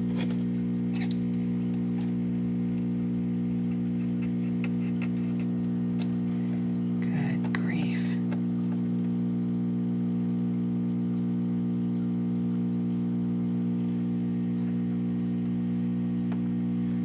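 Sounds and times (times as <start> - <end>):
electrical mains hum: 0.0 - 17.0.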